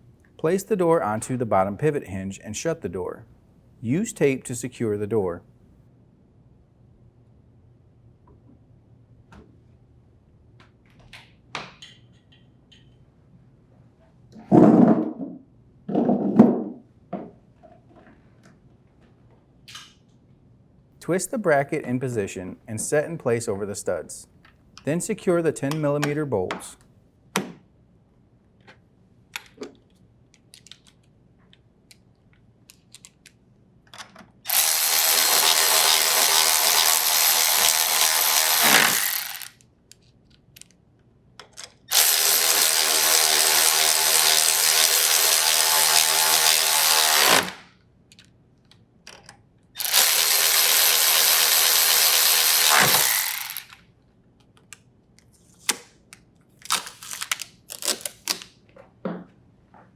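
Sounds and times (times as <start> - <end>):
drill driver running: 34.5 - 39.6, 41.9 - 47.7, 49.8 - 53.8.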